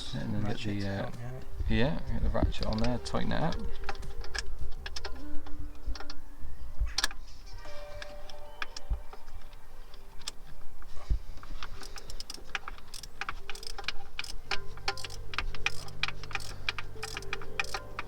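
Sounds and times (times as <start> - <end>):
socket ratchet clicking: 11.5 - 18.0.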